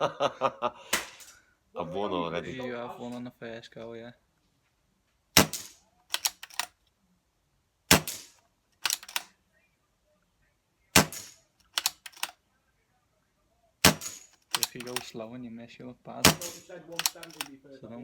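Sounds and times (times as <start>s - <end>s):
air rifle shots cracking: 5.4s - 6.7s, 7.9s - 9.3s, 11.0s - 12.3s, 13.8s - 15.1s, 16.2s - 17.5s
metallic clicks of rifle action: 5.4s - 6.8s, 7.9s - 9.3s, 11.0s - 12.4s, 13.9s - 15.2s, 16.3s - 17.5s.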